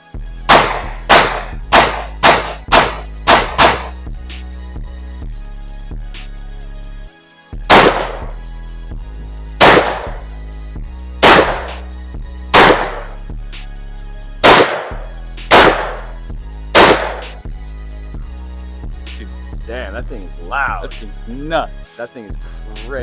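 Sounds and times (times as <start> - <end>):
background music with steady beat: 0.0 - 23.0
rifle shots: 0.5 - 4.0, 7.7 - 8.4, 9.6 - 10.2, 11.2 - 11.9, 12.6 - 13.2, 14.4 - 16.1, 16.8 - 17.4.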